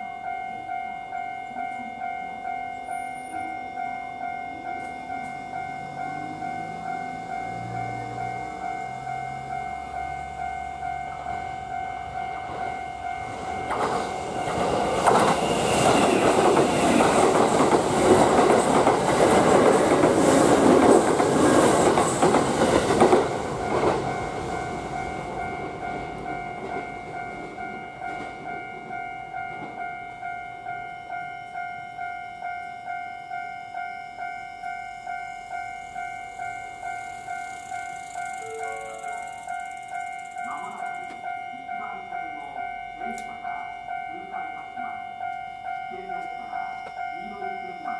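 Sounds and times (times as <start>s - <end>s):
level crossing warning bell: 0.0s - 47.9s
train wheels clattering: 12.4s - 29.9s.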